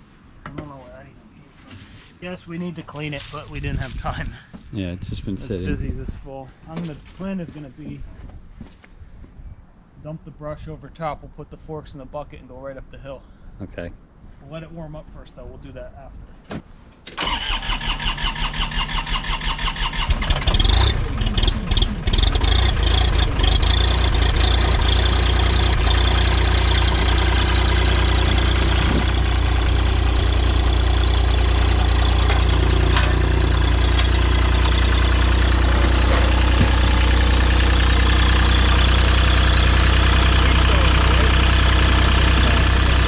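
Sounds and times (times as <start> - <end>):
starter motor cranking: 17.2 - 39.4
diesel engine running: 17.2 - 43.0.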